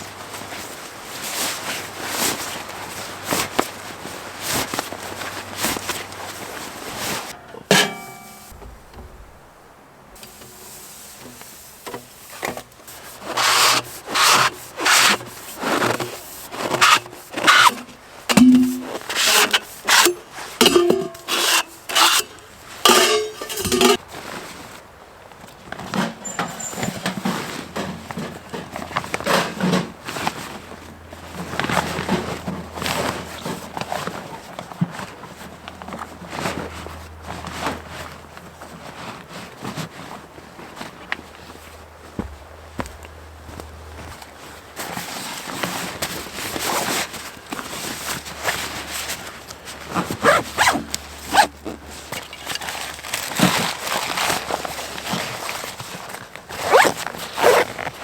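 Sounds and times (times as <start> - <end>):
irregular scraping and rubbing: 10.2 - 24.1.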